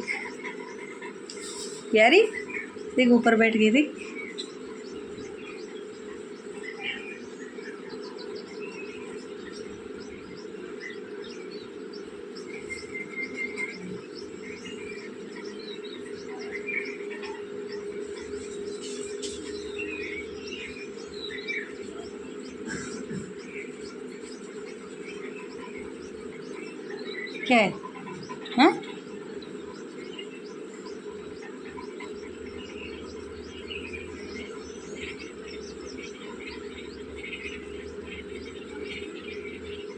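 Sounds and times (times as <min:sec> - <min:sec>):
small birds chirping: 0:00.0 - 0:39.9
steady low hum: 0:00.0 - 0:39.9.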